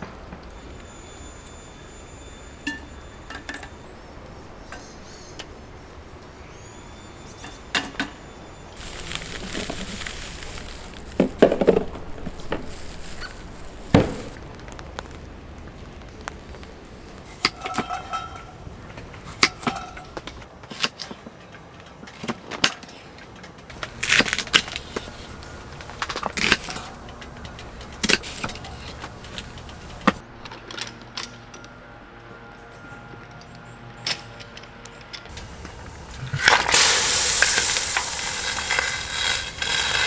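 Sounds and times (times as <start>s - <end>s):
faint steady hiss: 0.0s - 20.5s, 23.7s - 30.2s, 35.3s - 40.0s.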